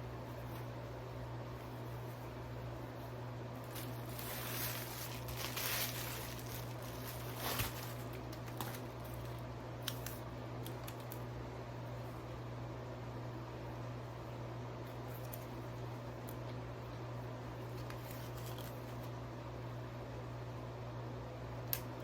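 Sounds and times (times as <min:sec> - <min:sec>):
packaging rustling and crinkling: 0:03.6 - 0:10.2, 0:17.7 - 0:19.1.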